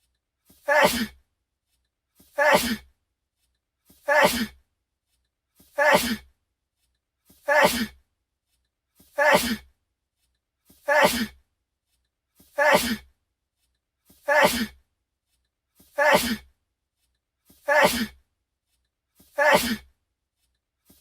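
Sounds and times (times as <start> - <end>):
man sneezing: 0.6 - 1.2, 2.4 - 2.8, 4.1 - 4.6, 5.8 - 6.2, 7.5 - 8.0, 9.2 - 9.6, 10.9 - 11.4, 12.6 - 13.0, 14.3 - 14.8, 16.0 - 16.4, 17.7 - 18.2, 19.4 - 19.9.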